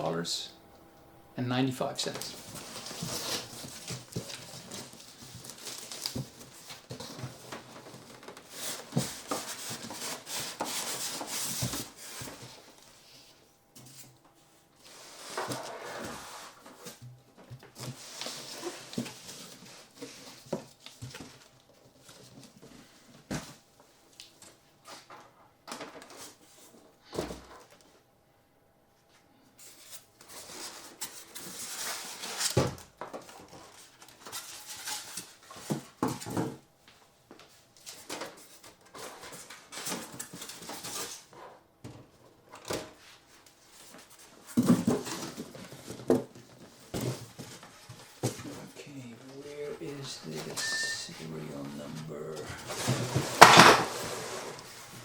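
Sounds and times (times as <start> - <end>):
cardboard packaging rustling: 2.0 - 12.9, 42.6 - 55.0.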